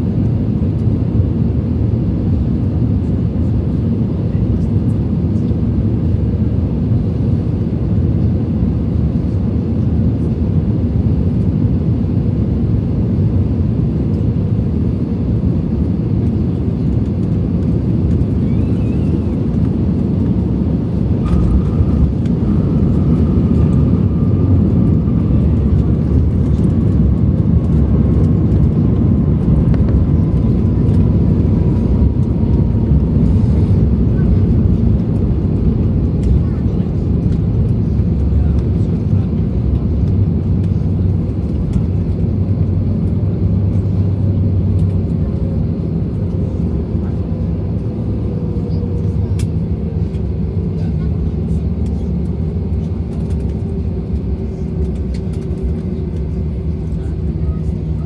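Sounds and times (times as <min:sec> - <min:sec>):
jet engine cabin rumble: 0:00.0 - 0:58.0.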